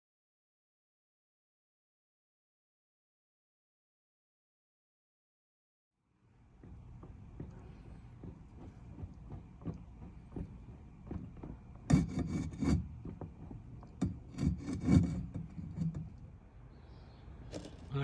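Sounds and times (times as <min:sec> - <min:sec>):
scraping and rubbing: 0:10.3 - 0:16.3.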